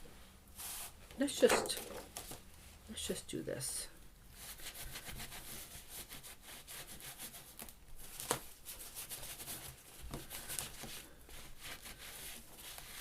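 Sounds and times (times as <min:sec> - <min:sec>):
brush scrubbing on paper: 0:04.3 - 0:07.6, 0:08.6 - 0:13.0.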